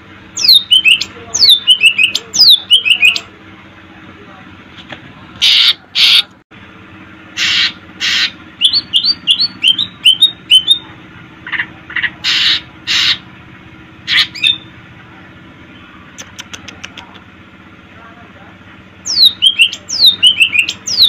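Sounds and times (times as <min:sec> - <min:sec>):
bird singing harsh scratchy calls: 0:00.4 - 0:03.3, 0:05.4 - 0:06.3, 0:07.4 - 0:10.8, 0:11.4 - 0:13.2, 0:14.0 - 0:14.7, 0:19.0 - 0:21.0
bird rising chirps: 0:07.4 - 0:10.9, 0:19.0 - 0:21.0.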